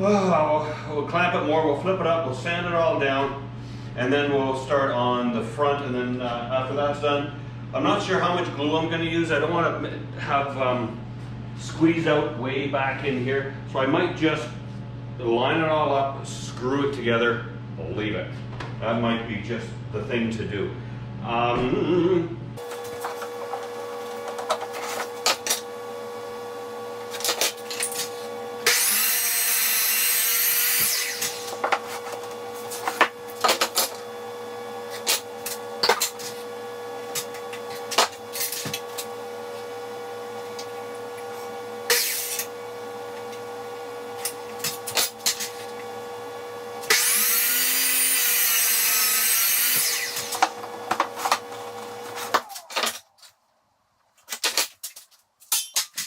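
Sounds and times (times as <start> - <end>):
steady hum: 0.0 - 30.0
power tool running: 22.6 - 53.1
knocks and clicks of wood and tools: 30.8 - 34.0, 49.8 - 53.4.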